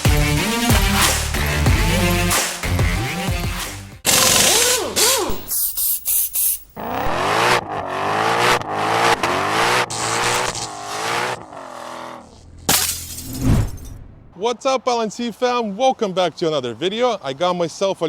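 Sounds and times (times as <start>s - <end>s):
car engine revving: 6.8s - 12.7s.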